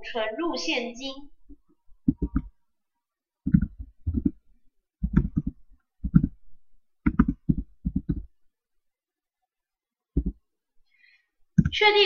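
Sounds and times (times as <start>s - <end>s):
computer keyboard typing: 5.0s - 6.4s.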